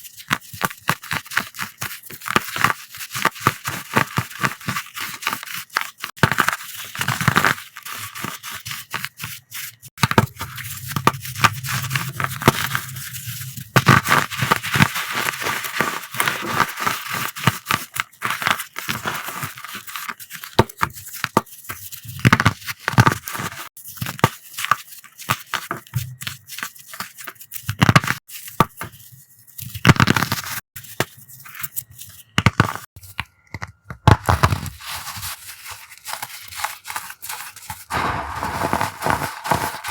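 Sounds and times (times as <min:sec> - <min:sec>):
chalk blocks being crushed: 0:34.0 - 0:39.9
heavier crunches: 0:37.9 - 0:39.9.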